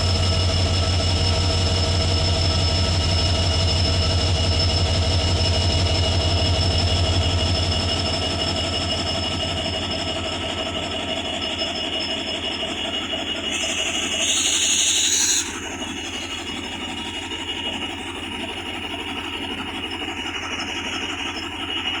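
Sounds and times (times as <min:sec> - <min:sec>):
diesel locomotive engine rumbling: 0:00.0 - 0:22.0
loud hissing: 0:13.5 - 0:16.8.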